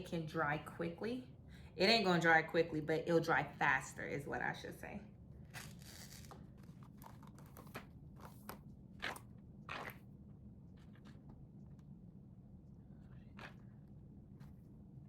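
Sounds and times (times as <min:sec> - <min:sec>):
faint crackles and taps: 0:06.1 - 0:12.0.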